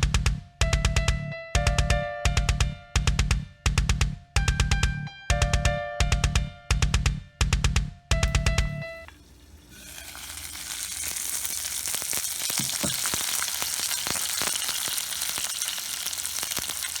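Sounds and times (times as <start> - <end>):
drum-led music: 0.0 - 9.1
food sizzling in a skillet: 8.6 - 17.0.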